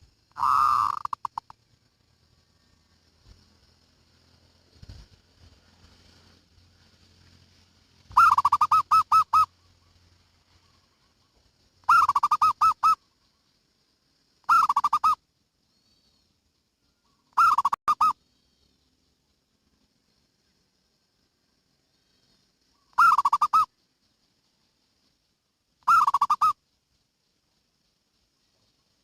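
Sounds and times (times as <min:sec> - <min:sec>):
dove cooing: 0:00.0 - 0:01.5, 0:08.1 - 0:09.6, 0:11.9 - 0:13.0, 0:14.5 - 0:15.2, 0:17.4 - 0:18.2, 0:22.8 - 0:23.7, 0:25.8 - 0:26.6.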